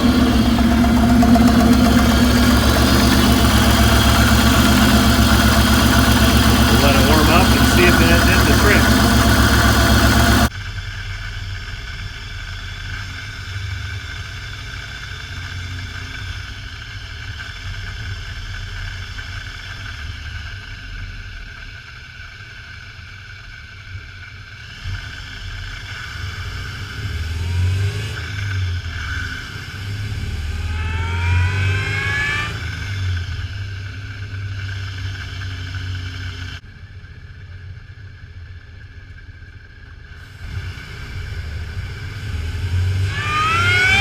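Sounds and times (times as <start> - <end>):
loud noise burst: 0.0 - 10.5
car engine running and revving: 0.0 - 21.0, 24.6 - 36.6, 40.0 - 44.0.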